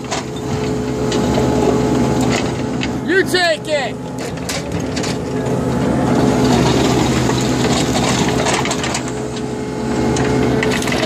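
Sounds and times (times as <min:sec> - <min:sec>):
machine engine running: 0:00.0 - 0:11.0
light clanks and rattles: 0:04.1 - 0:09.4.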